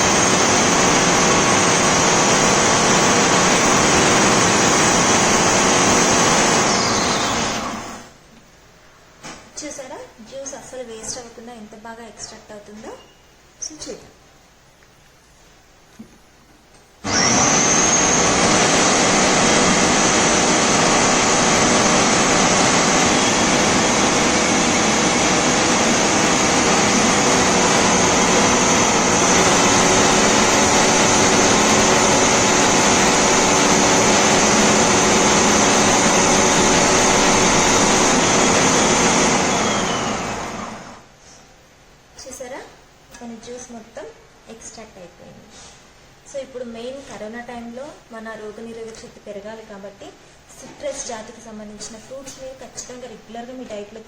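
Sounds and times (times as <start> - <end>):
food processor motor whining: 0.0 - 8.1, 17.0 - 41.1.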